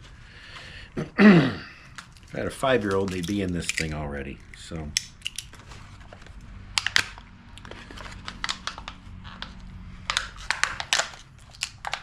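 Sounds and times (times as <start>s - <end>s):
plastic packaging being pried open: 8.0s - 12.0s.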